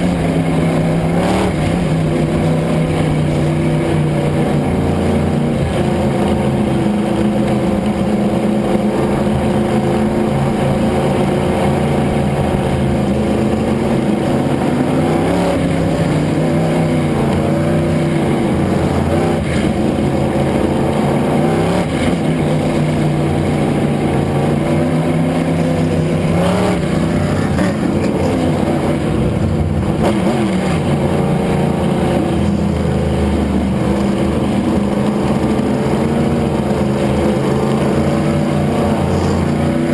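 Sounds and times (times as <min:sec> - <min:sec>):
race car engine revving: 0:00.0 - 0:39.9.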